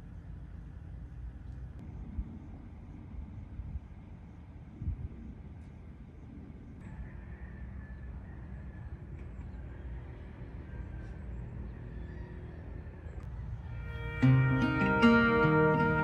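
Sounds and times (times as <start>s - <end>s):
faint thin tone: 13.6s - 16.0s.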